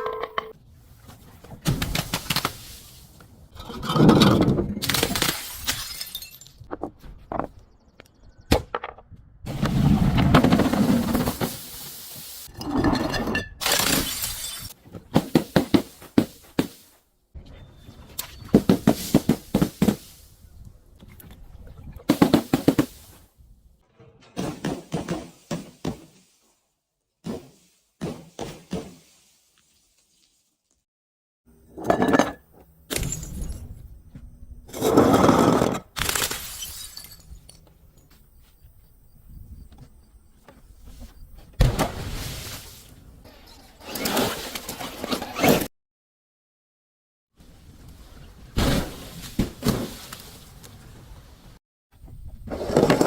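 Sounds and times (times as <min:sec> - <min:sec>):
glass crunching cracks: 0:04.8 - 0:06.6, 0:13.6 - 0:14.8, 0:36.0 - 0:37.6
glass shattering: 0:04.9 - 0:06.6, 0:13.5 - 0:14.8, 0:32.9 - 0:33.8, 0:36.0 - 0:37.6
glass bottles smashing: 0:05.1 - 0:06.7, 0:13.0 - 0:14.8, 0:31.9 - 0:33.8, 0:36.2 - 0:37.6.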